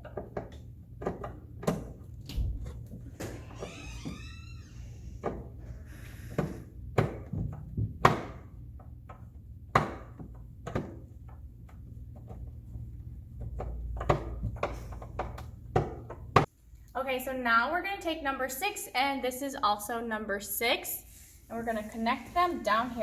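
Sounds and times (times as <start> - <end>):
hard plastic parts knocking and clicking: 0.0 - 3.4, 6.3 - 12.5, 13.3 - 16.5.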